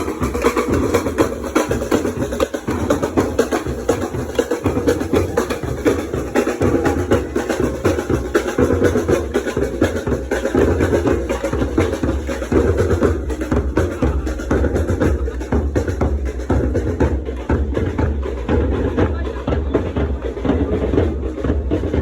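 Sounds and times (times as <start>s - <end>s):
percussion band drumming: 0.0s - 22.0s.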